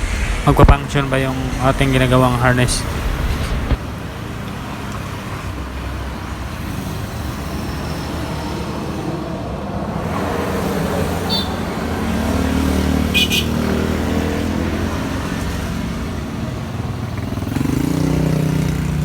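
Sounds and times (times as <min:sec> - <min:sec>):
vehicle engine rumbling: 0:00.0 - 0:04.9.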